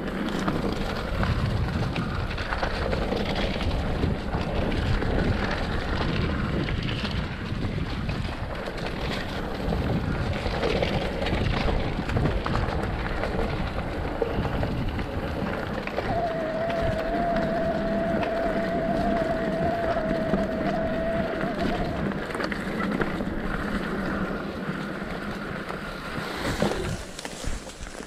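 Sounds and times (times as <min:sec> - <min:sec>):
wind noise on microphone: 0:00.0 - 0:28.0
bicycle brake squealing: 0:15.9 - 0:23.0.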